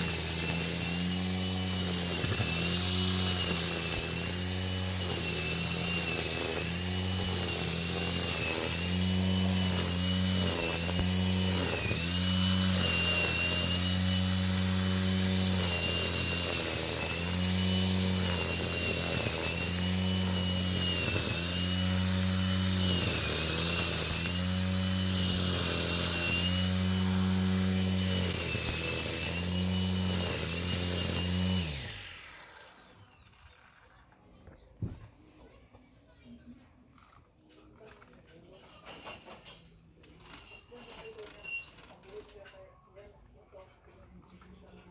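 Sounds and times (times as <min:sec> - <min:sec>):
angle grinder whining: 0:00.0 - 0:35.0.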